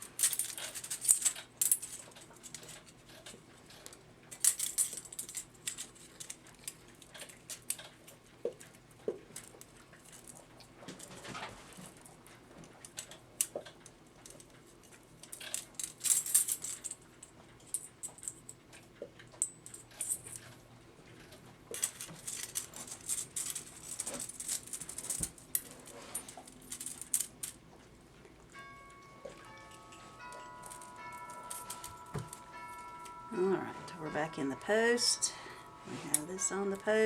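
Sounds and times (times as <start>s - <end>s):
metal clock parts clicking and scraping: 0.0s - 8.0s, 21.7s - 27.6s, 29.0s - 37.0s.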